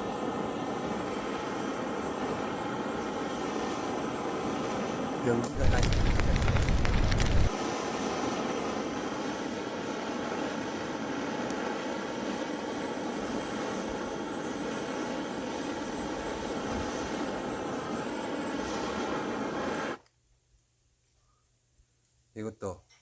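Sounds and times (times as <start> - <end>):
gas torch flame hissing: 0.0 - 20.0
low rumble: 5.5 - 7.5.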